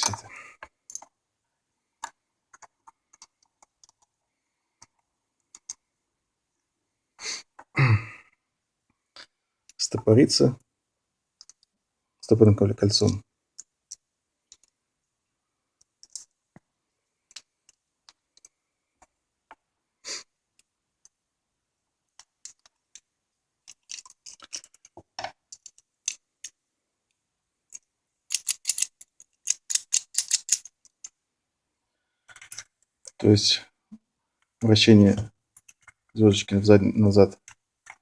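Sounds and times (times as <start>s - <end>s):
small steel parts clicking: 0.0s - 0.3s, 23.7s - 26.6s, 27.7s - 31.2s.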